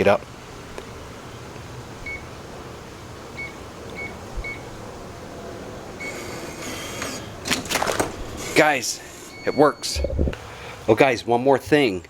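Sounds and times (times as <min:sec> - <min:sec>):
lock motor whirring: 0:06.0 - 0:07.6
keypad beeps: 0:09.4 - 0:10.3.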